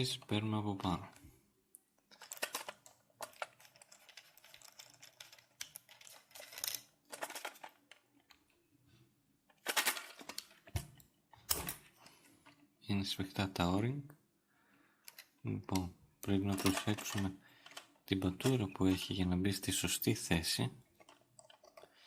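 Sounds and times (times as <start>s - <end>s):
plastic fittings clicking and scraping: 2.1s - 8.5s, 15.0s - 19.2s, 21.0s - 22.0s.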